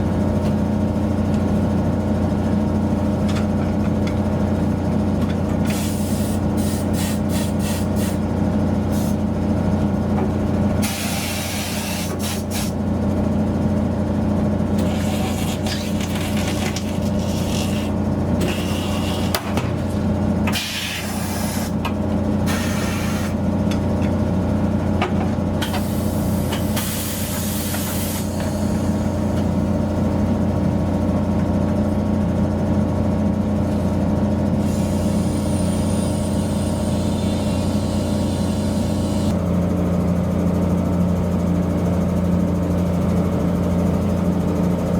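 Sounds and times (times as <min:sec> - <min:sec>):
steady mechanical hum: 0:00.0 - 0:44.9
compressed air hissing: 0:05.7 - 0:08.2, 0:10.8 - 0:12.8, 0:20.5 - 0:21.8, 0:22.5 - 0:23.4, 0:25.6 - 0:29.0, 0:34.6 - 0:39.3.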